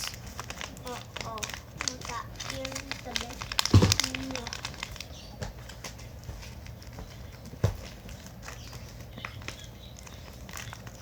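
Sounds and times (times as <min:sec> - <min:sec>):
small objects tapping and clicking: 0:00.0 - 0:06.0, 0:06.6 - 0:11.0
loud knock: 0:03.7 - 0:04.1.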